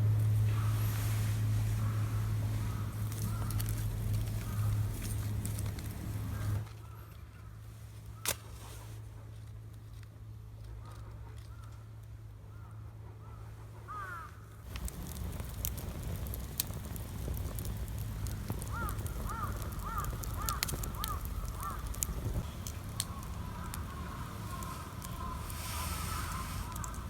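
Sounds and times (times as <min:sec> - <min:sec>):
steady low rumble: 0:00.0 - 0:06.7, 0:14.7 - 0:27.0
bird calling: 0:18.3 - 0:27.0.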